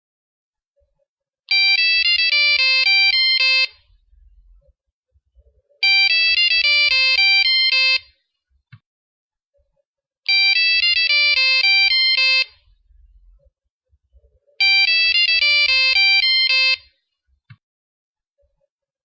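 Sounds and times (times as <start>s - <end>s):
electronic beeping ringtone: 1.5s - 3.9s, 5.8s - 8.0s, 10.3s - 12.6s, 14.5s - 16.9s.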